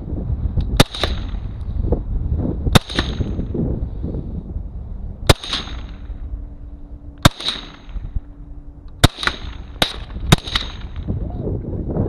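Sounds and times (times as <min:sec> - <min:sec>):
rifle gunshots: 0:00.8 - 0:01.4, 0:02.7 - 0:03.4, 0:05.3 - 0:06.2, 0:07.2 - 0:08.0, 0:09.0 - 0:11.1.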